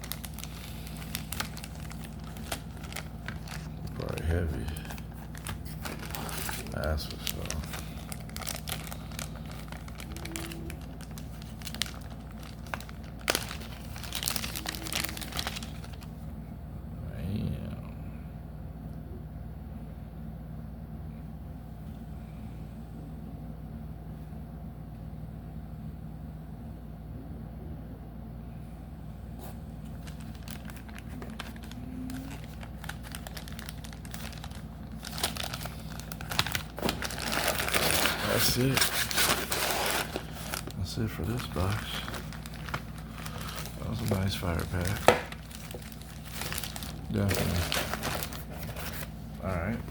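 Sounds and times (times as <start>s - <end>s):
plastic packaging crinkling: 0.0s - 16.2s, 29.4s - 49.9s
steady low hum: 0.0s - 49.9s.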